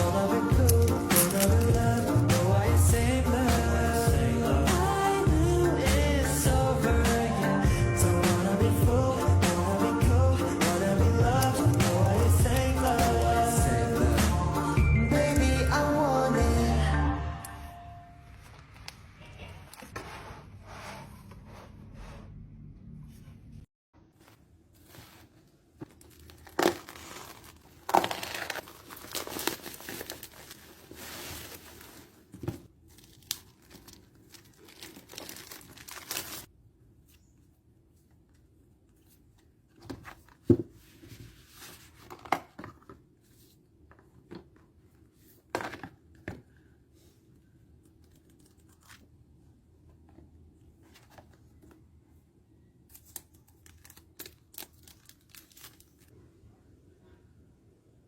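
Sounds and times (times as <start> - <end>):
packaging being torn and crinkled: 0.6 - 2.1, 25.9 - 31.8, 32.9 - 36.5, 52.9 - 56.1.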